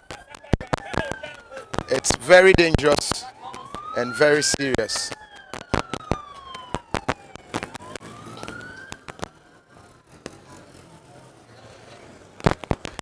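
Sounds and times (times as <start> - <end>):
sharp cracks and pops: 0.0 - 9.4, 12.4 - 13.0
emergency siren wailing: 0.0 - 10.2.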